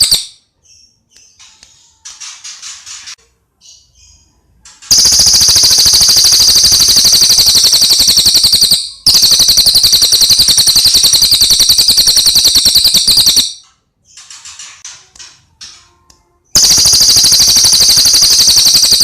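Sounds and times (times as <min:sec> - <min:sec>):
bird singing fast trill: 0:00.0 - 0:01.1
faint bird chirps: 0:00.0 - 0:02.3.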